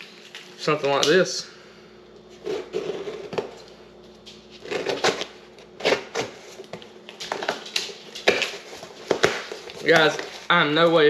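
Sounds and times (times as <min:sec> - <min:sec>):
packaging rustling and tearing: 0:02.3 - 0:11.0.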